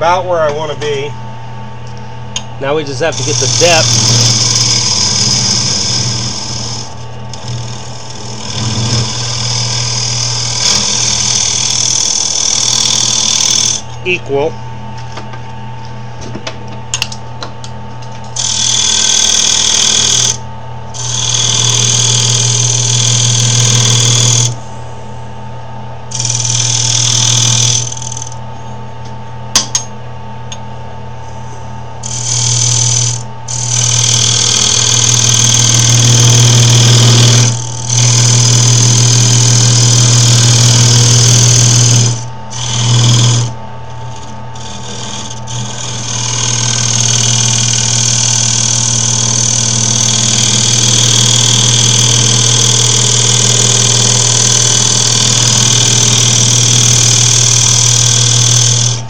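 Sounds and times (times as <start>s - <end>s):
wood lathe humming: 2.6s - 14.5s, 18.3s - 20.4s, 21.0s - 24.6s, 26.1s - 28.4s, 32.0s - 59.0s
turning tool cutting wood: 2.8s - 14.0s, 18.3s - 20.4s, 21.0s - 24.6s, 26.1s - 28.4s, 32.0s - 59.0s.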